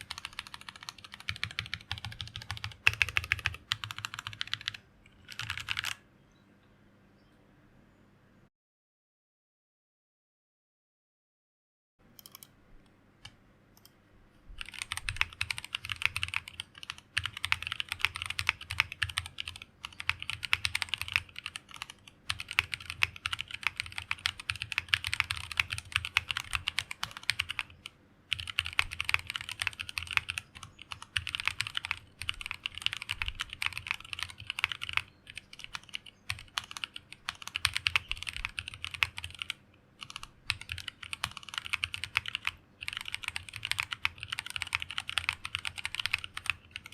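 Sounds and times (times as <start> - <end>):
typing on mechanical keyboard: 0.0 - 6.0, 14.6 - 46.9.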